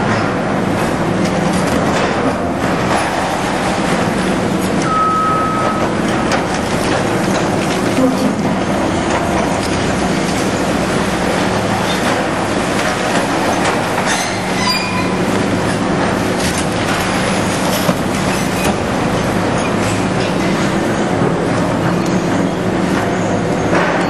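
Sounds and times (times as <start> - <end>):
demolition machinery engine hum: 0.0 - 24.0
high metallic squeal: 14.1 - 15.2.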